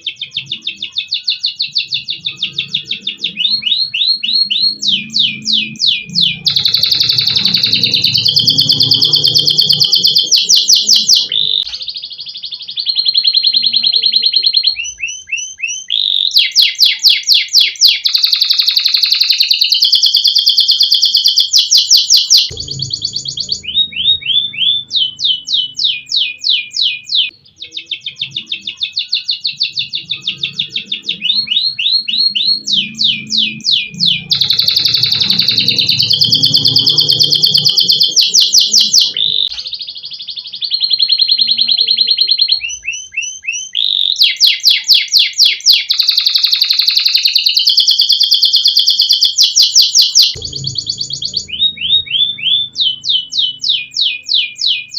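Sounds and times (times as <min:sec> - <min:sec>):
canary singing rapid trills: 0:00.0 - 0:54.9
faint low rumble: 0:22.5 - 0:26.0, 0:50.4 - 0:53.9.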